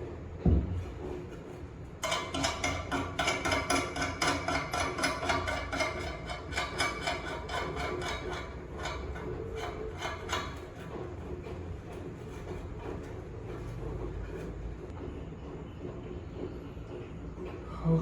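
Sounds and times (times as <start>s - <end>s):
thump: 0.4s - 0.8s.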